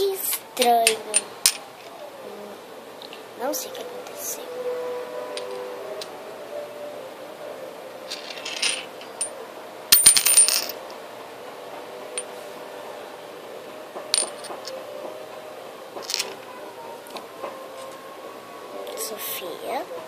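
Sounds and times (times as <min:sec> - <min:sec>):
small hard objects clinking: 0:08.1 - 0:09.3.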